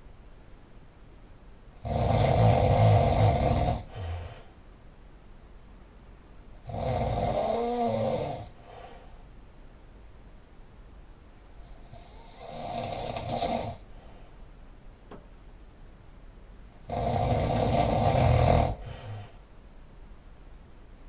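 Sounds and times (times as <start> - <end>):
loud snoring: 1.8 - 4.4, 6.6 - 8.6, 11.9 - 13.9, 16.8 - 19.4.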